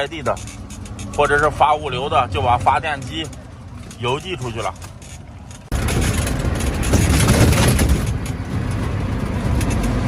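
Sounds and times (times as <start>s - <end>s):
wind and road noise: 0.0s - 10.0s.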